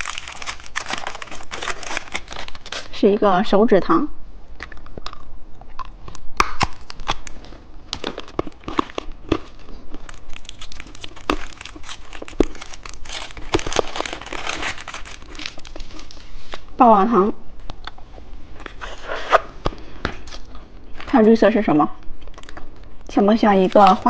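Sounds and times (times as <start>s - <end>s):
candy wrapper tearing and crinkling: 0.0s - 3.0s, 4.6s - 16.7s.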